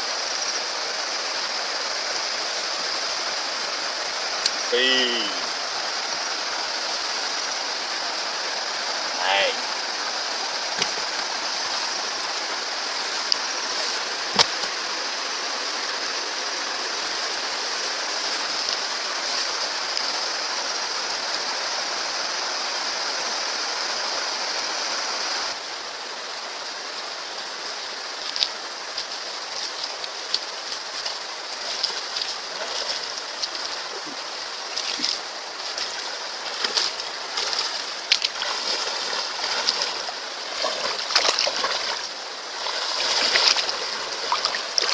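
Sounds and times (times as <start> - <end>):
rushing stream water: 0.0 - 44.9
water splashes: 1.1 - 14.8, 26.8 - 44.9.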